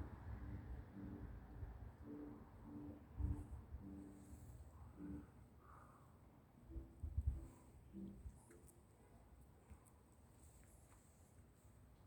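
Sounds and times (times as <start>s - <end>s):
faint low rumble: 0.0s - 5.4s.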